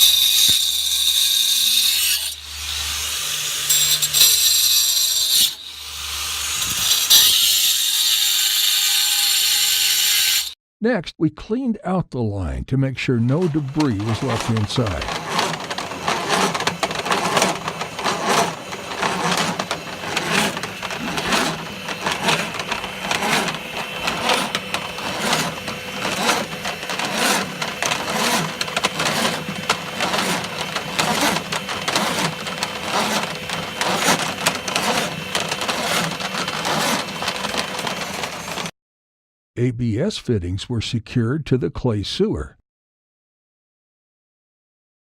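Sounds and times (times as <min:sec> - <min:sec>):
drain-cleaning machine clattering: 0:13.4 - 0:38.7.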